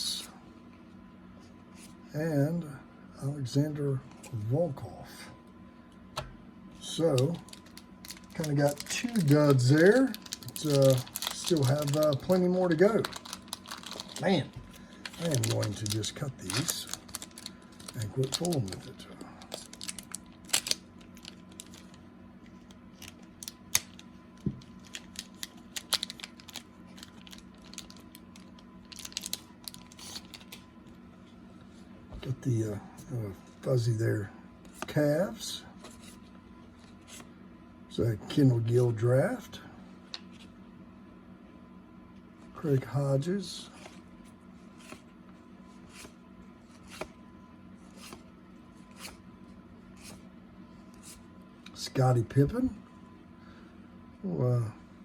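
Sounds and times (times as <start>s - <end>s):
cellophane crinkling: 6.8s - 30.6s
cards sliding swish: 46.8s - 47.2s.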